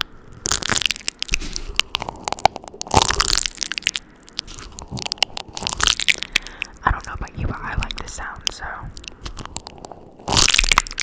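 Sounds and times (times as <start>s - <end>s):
tape ripping: 0.0s - 6.4s, 9.2s - 11.0s
adhesive tape crackling: 0.0s - 11.0s.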